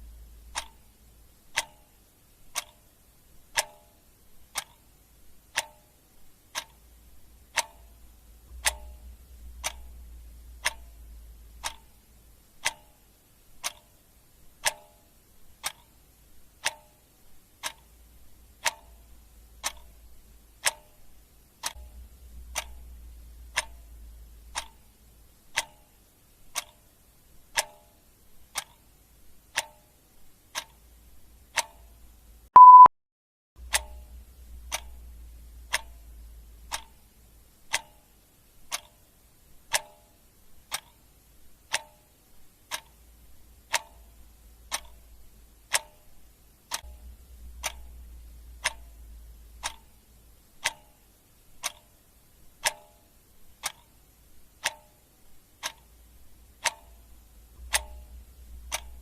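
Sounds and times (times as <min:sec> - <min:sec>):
clock ticking: 0:00.0 - 0:32.9, 0:33.6 - 0:59.0
short electronic beep: 0:32.6 - 0:32.9.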